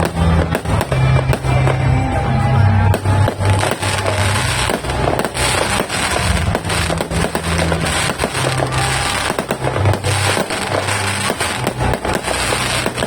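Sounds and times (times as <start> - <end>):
background music: 0.0 - 13.0
fireworks bangs and crackles: 0.0 - 13.0.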